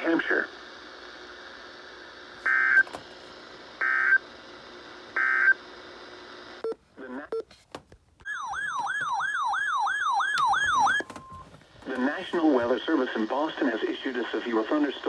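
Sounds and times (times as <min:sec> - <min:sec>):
weather radio warning alarm: 0:08.3 - 0:12.2
clicks: 0:10.3 - 0:12.4.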